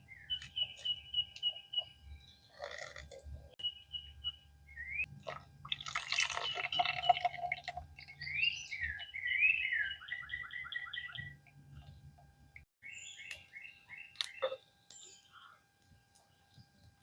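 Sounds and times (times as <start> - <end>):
songbirds singing: 0.0 - 17.0.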